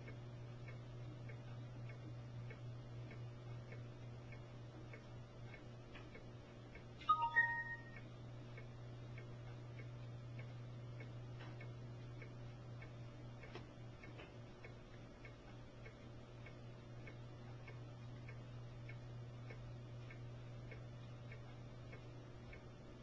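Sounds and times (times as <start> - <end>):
faint regular ticking: 0.0 - 23.0
steady low hum: 0.0 - 23.0.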